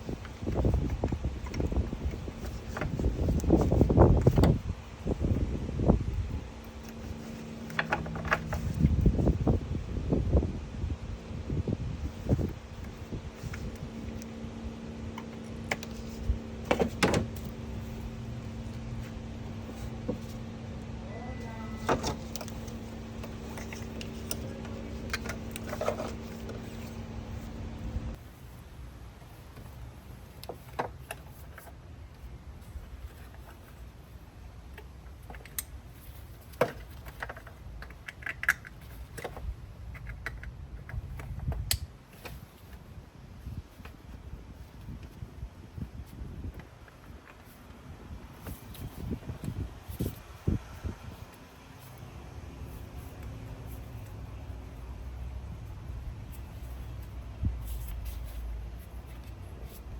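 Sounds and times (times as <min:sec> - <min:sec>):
steady low hum: 0:00.0 - 0:28.2, 0:47.6 - 0:59.9
car parts clicking and knocking: 0:06.8 - 0:09.6, 0:12.2 - 0:21.0, 0:21.8 - 0:28.2, 0:36.4 - 0:42.4
clicks and knocks of car parts: 0:15.1 - 0:18.4.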